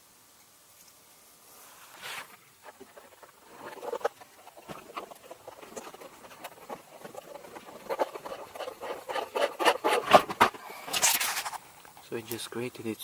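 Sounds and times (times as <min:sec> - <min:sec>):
screw scratching into plastic: 0:02.2 - 0:11.6.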